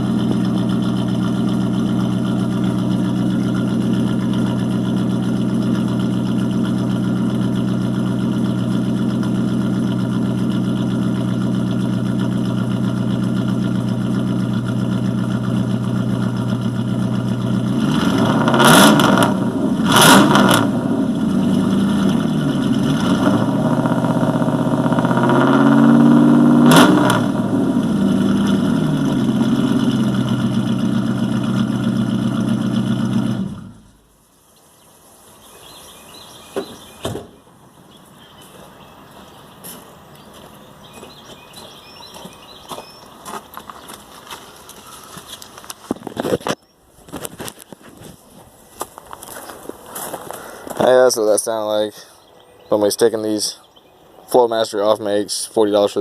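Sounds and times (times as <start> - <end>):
truck engine idling and revving: 0.0 - 34.2.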